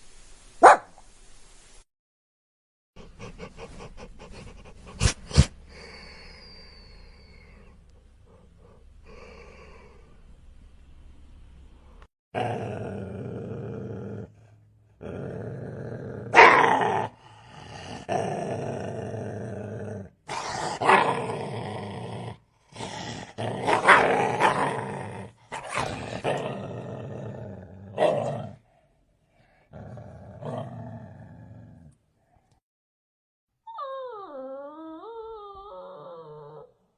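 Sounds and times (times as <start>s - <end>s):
dog barking loudly: 0.6s - 1.0s, 16.3s - 16.8s, 23.7s - 24.6s
dog growling: 12.4s - 28.7s, 29.5s - 32.0s.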